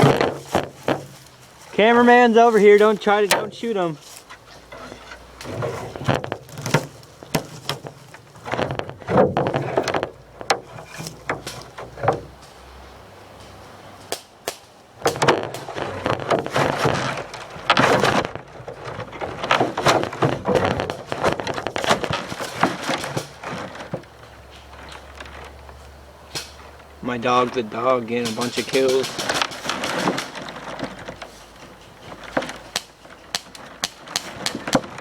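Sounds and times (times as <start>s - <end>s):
rustling through dry leaves: 0.0s - 35.0s
twigs snapping underfoot: 13.4s - 26.9s, 28.1s - 35.0s.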